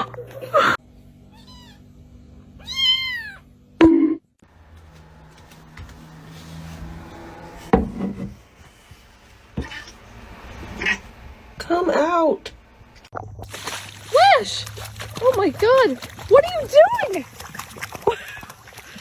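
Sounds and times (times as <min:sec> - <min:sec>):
cat meowing: 0:01.3 - 0:01.8, 0:02.6 - 0:03.5.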